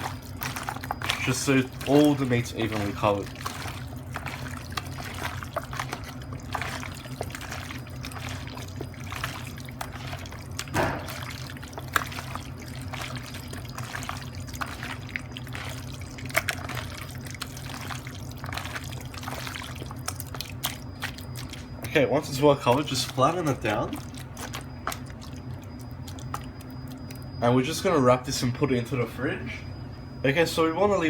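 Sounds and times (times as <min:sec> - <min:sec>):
meat squelching in marinade: 0:00.0 - 0:27.6.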